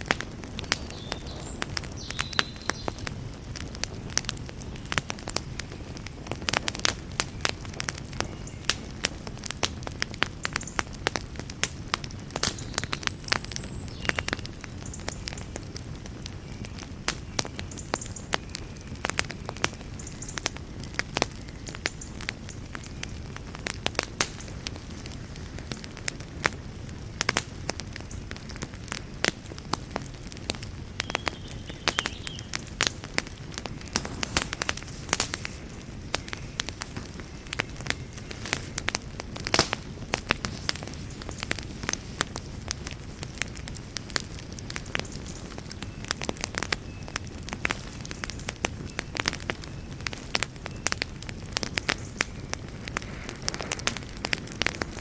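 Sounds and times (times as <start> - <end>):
wood fire crackling: 0.0 - 55.0
sharp pops: 31.9 - 43.5
faint hisses: 33.6 - 42.8, 52.2 - 55.0.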